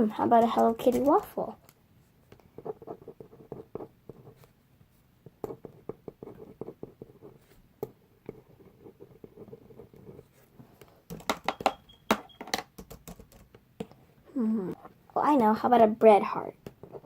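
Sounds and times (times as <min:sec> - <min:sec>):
pen writing on paper: 0:02.6 - 0:04.5, 0:05.4 - 0:10.5.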